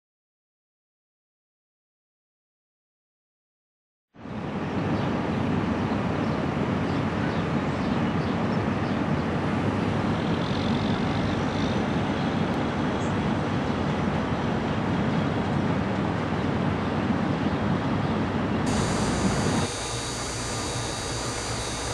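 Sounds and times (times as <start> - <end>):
farm machinery running: 18.7 - 21.9.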